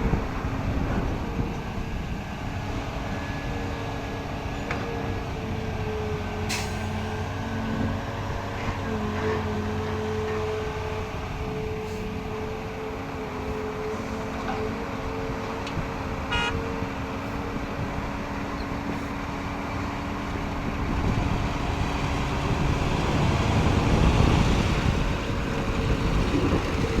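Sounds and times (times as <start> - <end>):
diesel excavator engine: 0.0 - 27.0.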